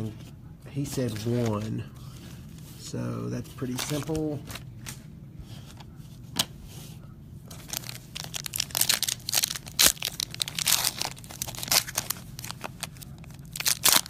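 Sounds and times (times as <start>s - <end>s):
plastic wrapping crinkling: 7.5s - 14.0s.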